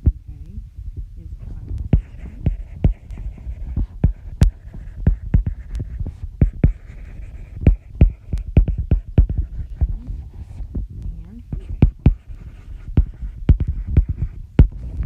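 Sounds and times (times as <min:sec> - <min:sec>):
dull low thumps: 0:00.0 - 0:15.0
steady low hum: 0:00.0 - 0:15.0
sharp taps and knocks: 0:01.8 - 0:06.8, 0:07.6 - 0:10.0, 0:11.5 - 0:15.0.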